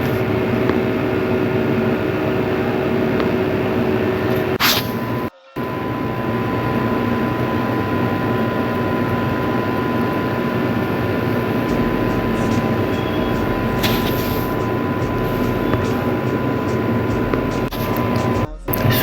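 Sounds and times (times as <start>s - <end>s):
loud background noise: 0.0s - 19.0s
thin constant high tone: 5.2s - 19.0s
burst of hiss: 13.8s - 16.2s.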